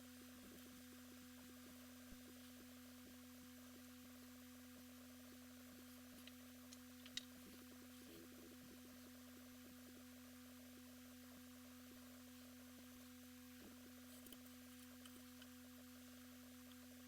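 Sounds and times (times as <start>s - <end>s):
faint steady hum: 0.0s - 17.0s
small clicks: 6.2s - 7.4s.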